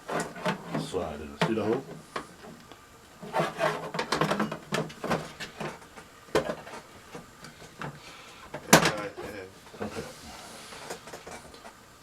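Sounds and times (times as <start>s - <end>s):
hard plastic parts rubbing and knocking: 3.2s - 8.0s.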